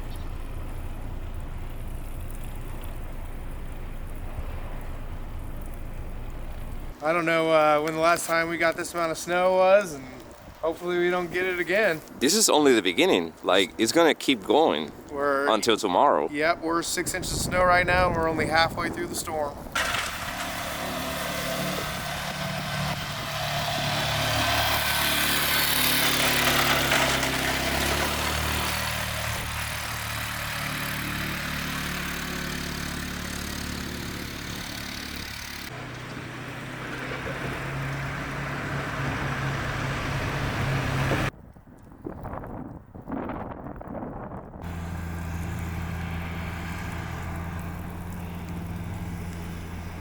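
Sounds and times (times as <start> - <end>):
engine running: 0.0 - 9.1, 16.5 - 41.3, 44.6 - 50.0.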